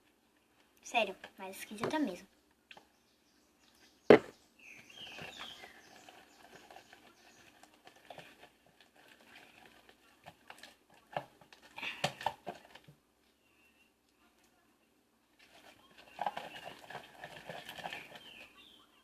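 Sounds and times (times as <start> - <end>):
sharp knock: 4.1 - 4.3.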